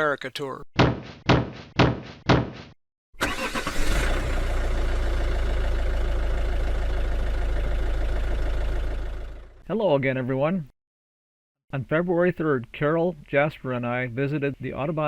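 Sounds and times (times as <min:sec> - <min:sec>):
engine cranking: 0:03.2 - 0:04.9
diesel engine running: 0:03.2 - 0:09.6.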